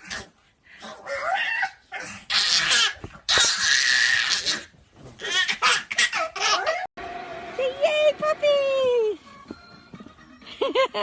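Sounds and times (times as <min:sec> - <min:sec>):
puppy whining: 0:00.0 - 0:06.9
puppy harsh cries: 0:00.9 - 0:06.9.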